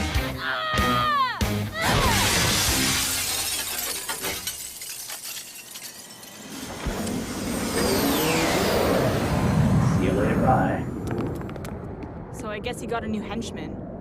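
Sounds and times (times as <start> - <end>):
glass shattering: 1.8 - 7.1
low rumble: 6.7 - 14.0.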